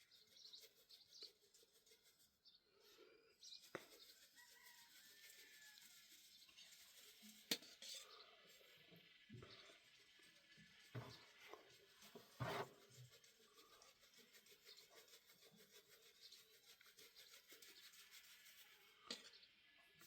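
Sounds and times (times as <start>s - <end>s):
faint rubbing: 10.9s - 19.2s.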